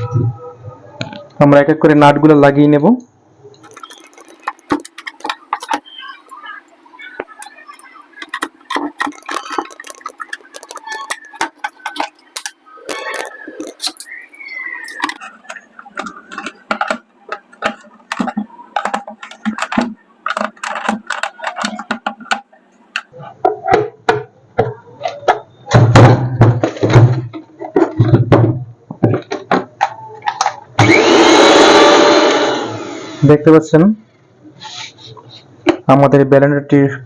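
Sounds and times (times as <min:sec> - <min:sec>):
clicks and knocks of blender parts: 0:14.8 - 0:30.6
blender motor running: 0:30.8 - 0:33.2.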